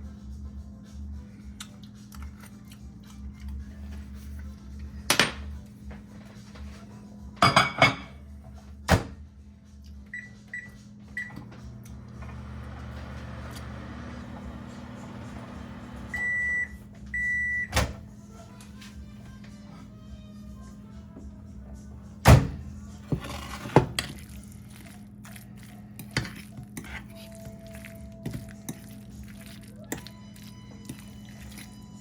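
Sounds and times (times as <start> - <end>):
microwave humming: 10.0 - 24.1.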